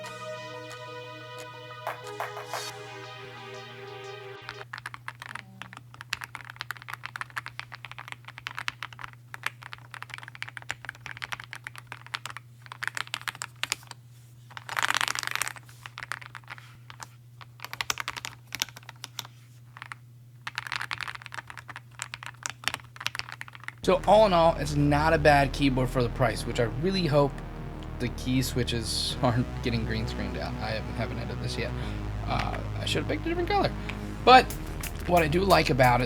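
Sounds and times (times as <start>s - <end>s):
electronic music: 0.0s - 4.7s, 23.8s - 36.0s
mechanical keyboard typing: 4.7s - 13.4s
steady low hum: 23.8s - 36.0s.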